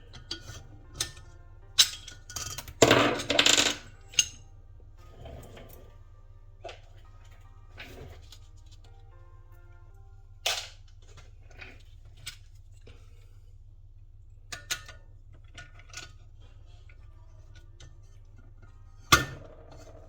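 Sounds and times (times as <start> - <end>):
tools and parts clacking: 0.0 - 4.5, 10.4 - 13.2, 14.5 - 20.0
faint background music: 0.0 - 20.0.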